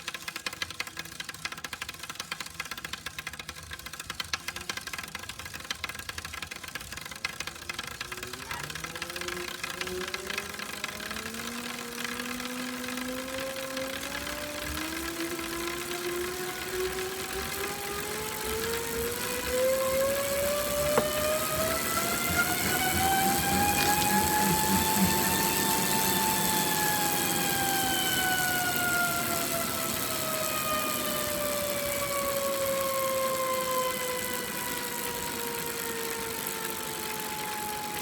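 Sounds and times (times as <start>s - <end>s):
hollow rattle ticking: 0.0s - 30.4s
bike trainer whining: 0.0s - 38.0s.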